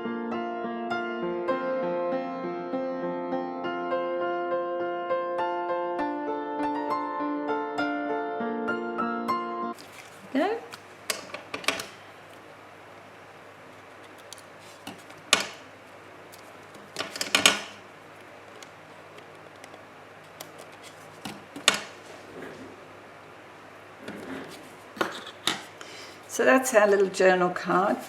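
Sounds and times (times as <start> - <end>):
paper taps and rustles: 14.0 - 15.6, 16.3 - 22.1.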